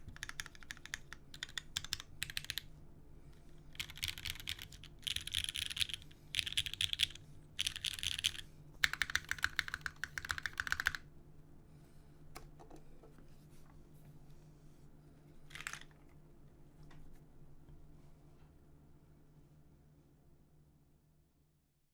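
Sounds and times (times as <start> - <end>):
keyboard typing: 0.0 - 2.7, 3.8 - 11.0.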